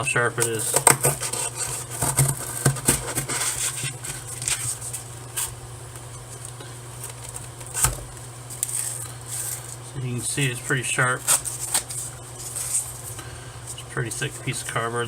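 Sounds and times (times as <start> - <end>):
steady low hum: 0.0 - 15.0
knife cutting cardboard: 0.4 - 5.6.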